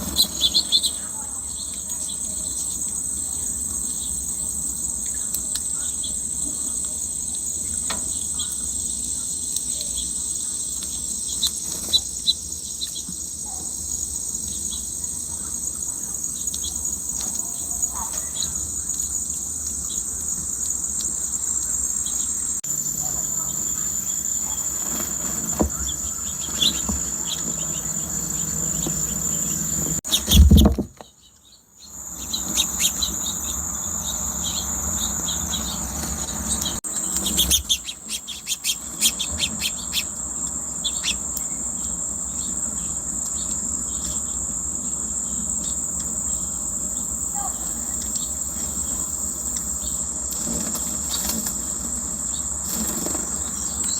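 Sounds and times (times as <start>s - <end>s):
bird chirps: 0.0s - 6.2s, 21.6s - 40.2s, 40.8s - 44.4s
crickets droning: 0.0s - 53.9s
loud thump: 30.2s - 31.0s.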